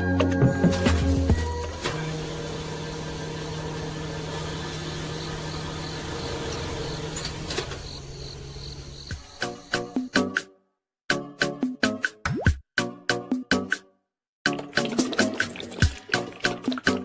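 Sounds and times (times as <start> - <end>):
small electric motor humming: 1.9 - 9.1.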